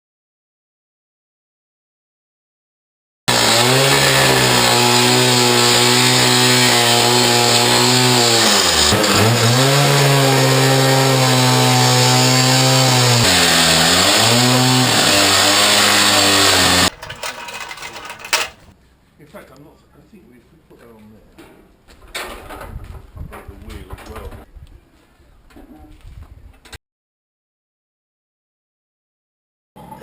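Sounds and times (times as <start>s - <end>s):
power tool motor running: 3.3s - 6.2s, 16.0s - 18.7s.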